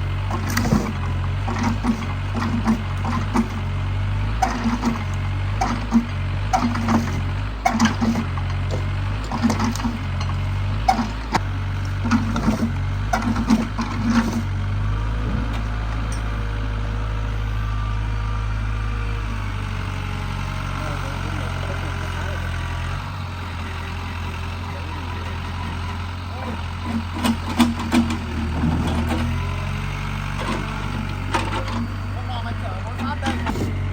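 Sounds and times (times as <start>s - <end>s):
excavator diesel engine running: 0.0s - 33.9s
sharp knocks and clatter: 0.3s - 3.7s, 4.4s - 14.5s, 26.8s - 29.4s.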